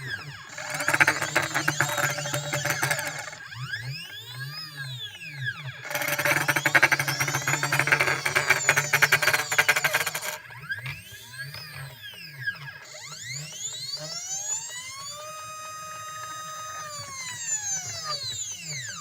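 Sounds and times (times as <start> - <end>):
stepper motor whine: 0.0 - 19.0
loud grinding rattle: 0.3 - 3.9, 5.6 - 10.5.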